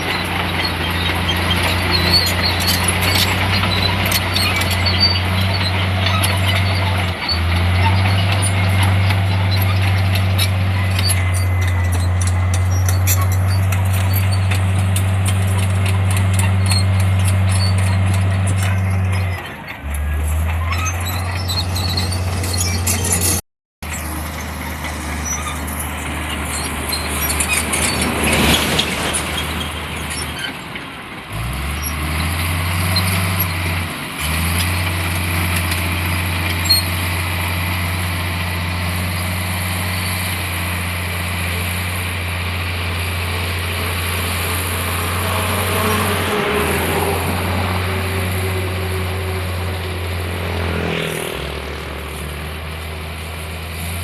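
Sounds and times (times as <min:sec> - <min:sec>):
grinding: 0:00.0 - 0:30.5
diesel engine of heavy machinery: 0:00.0 - 0:54.0.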